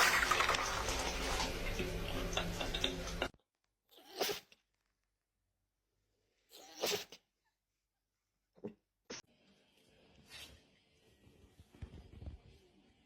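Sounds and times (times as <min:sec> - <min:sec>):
dog sneezing: 0:04.0 - 0:04.5, 0:06.5 - 0:07.2.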